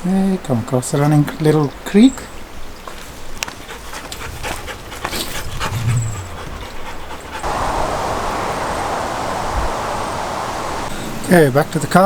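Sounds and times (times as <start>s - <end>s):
dog panting: 3.6s - 7.5s
steady rushing hiss: 7.4s - 11.0s.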